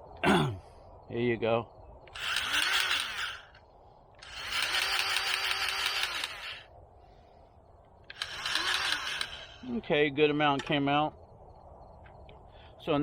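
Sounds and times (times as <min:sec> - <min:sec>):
grease gun motor running: 0:02.1 - 0:03.5, 0:04.2 - 0:06.7, 0:08.1 - 0:09.6.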